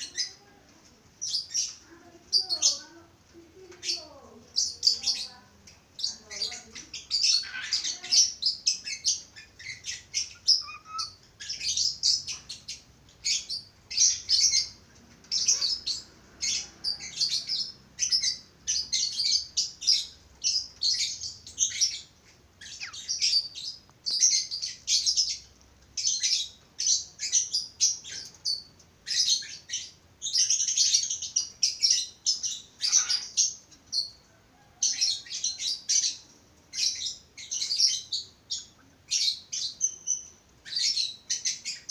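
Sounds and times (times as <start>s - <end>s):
budgerigars chattering: 6.0s - 34.2s.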